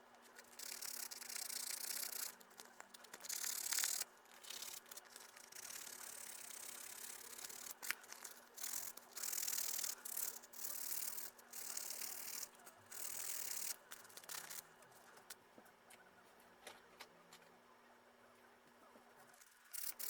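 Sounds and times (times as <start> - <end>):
hand rubbing wood: 0.3 - 15.4.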